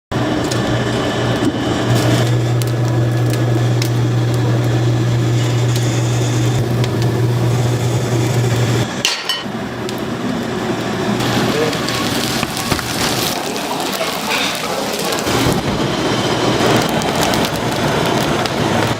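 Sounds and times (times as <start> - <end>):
low hum: 0.2 - 13.8
dense noisy background: 0.2 - 18.9
metal and dishes clinking: 9.0 - 9.5.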